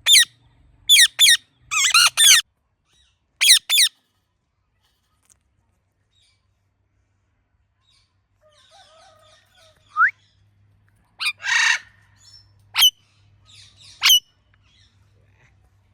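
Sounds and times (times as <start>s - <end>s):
parrot squawk: 0.0s - 0.3s, 0.9s - 2.4s, 3.4s - 3.9s, 11.2s - 12.0s, 12.8s - 13.0s, 14.0s - 14.2s
parrot chatter: 0.9s - 2.4s, 3.4s - 3.9s, 14.0s - 14.2s
parrot shrieks: 0.9s - 2.4s, 3.4s - 3.9s, 11.2s - 12.0s.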